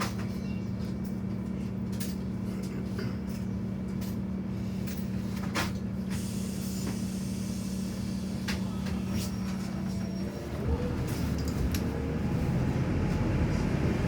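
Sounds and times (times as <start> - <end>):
vehicle engine droning: 6.2 - 14.0.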